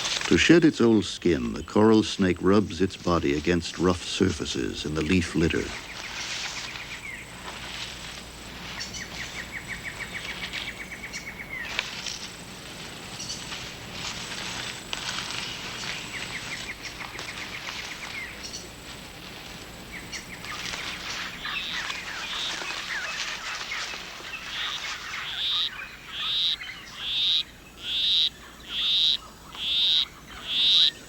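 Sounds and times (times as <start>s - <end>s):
birds chirping: 0.0s - 31.0s
insects trilling: 0.0s - 31.0s
frog calling short high notes: 25.2s - 30.9s.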